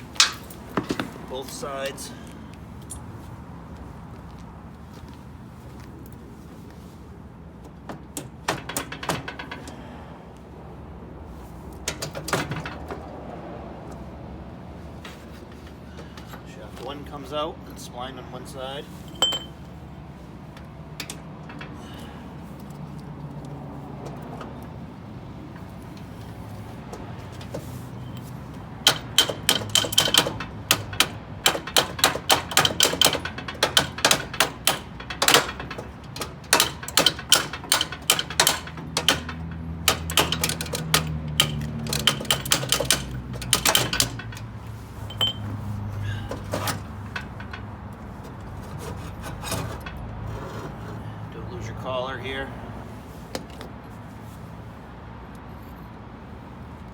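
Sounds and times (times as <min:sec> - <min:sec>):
metallic clicking and knocking: 0:00.0 - 0:01.2, 0:07.9 - 0:09.8, 0:11.8 - 0:13.1, 0:20.6 - 0:21.8, 0:26.9 - 0:45.6, 0:46.3 - 0:50.1.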